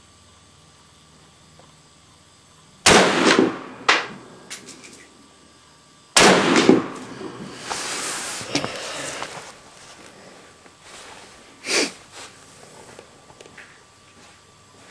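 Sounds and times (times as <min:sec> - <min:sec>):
rifle shots: 0:02.8 - 0:04.1, 0:06.2 - 0:07.1.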